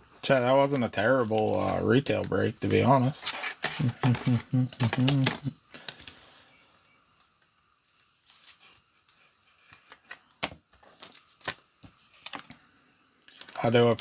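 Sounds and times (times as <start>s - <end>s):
packaging crinkling: 10.8s - 12.6s, 13.3s - 14.0s.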